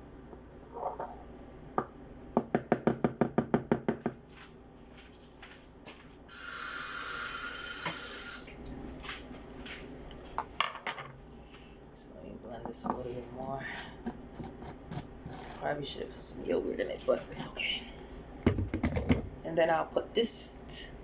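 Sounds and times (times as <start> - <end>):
hiss: 6.3 - 8.6.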